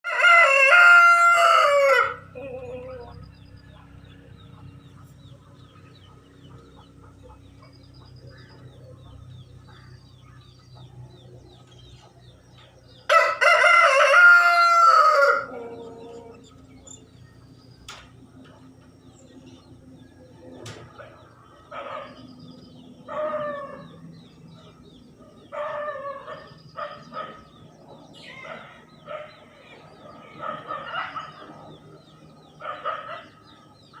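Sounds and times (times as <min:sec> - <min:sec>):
rooster crowing: 0:00.0 - 0:03.2, 0:13.0 - 0:16.5, 0:23.1 - 0:24.0.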